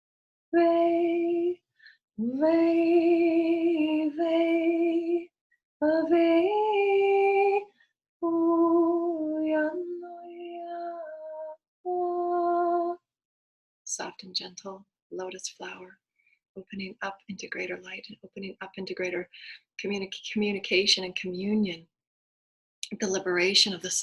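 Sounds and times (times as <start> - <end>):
woman singing wordless tones: 0.5 - 1.6, 2.2 - 13.1.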